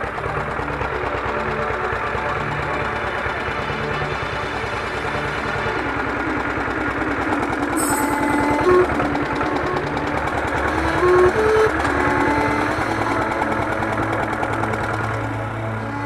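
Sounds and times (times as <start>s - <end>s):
engine running steadily: 0.0s - 16.0s
simple melody of held notes: 7.8s - 13.9s.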